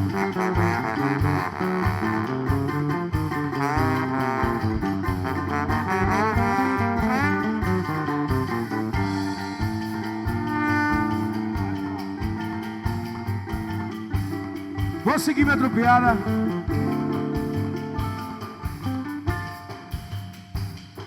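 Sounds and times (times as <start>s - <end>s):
live band instrumental: 0.0s - 21.0s.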